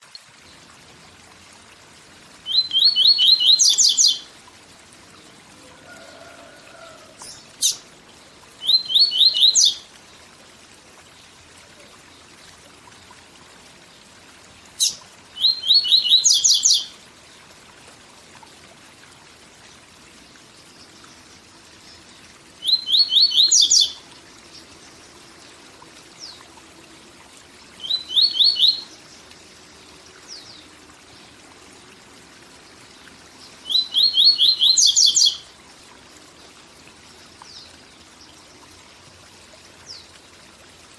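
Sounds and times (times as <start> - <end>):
bird singing: 2.5 - 4.3, 8.6 - 9.8, 14.8 - 16.9, 22.6 - 24.0, 27.8 - 29.0, 33.6 - 35.4
waterfall rushing: 5.2 - 8.0.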